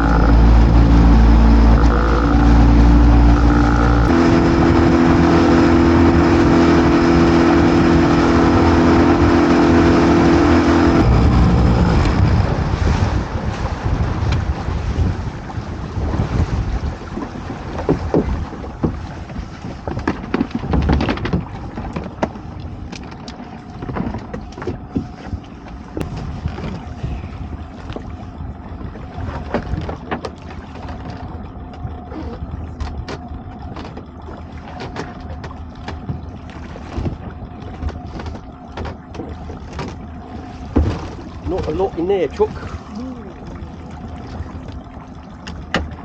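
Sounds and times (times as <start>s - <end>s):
faint motor hum: 0.0s - 16.0s, 22.1s - 46.0s
wind on microphone: 0.0s - 22.9s, 23.9s - 30.1s
water sloshing against hull: 0.0s - 46.0s
knocks and clatters: 19.8s - 23.2s.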